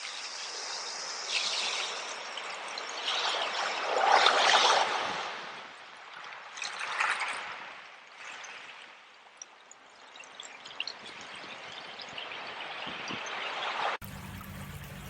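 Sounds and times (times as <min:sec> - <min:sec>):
small stream trickling: 0:05.8 - 0:15.0.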